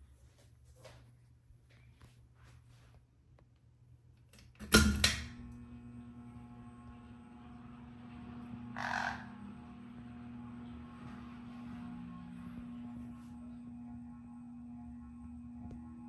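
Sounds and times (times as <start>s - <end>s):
fan motor humming: 4.3s - 16.0s.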